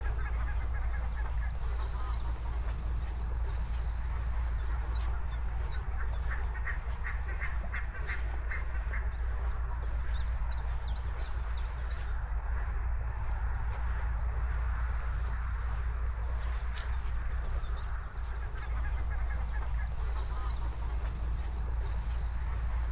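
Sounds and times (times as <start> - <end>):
small birds chirping: 0.0 - 22.9
steady low rumble: 0.0 - 22.9
geese honking: 0.1 - 2.5.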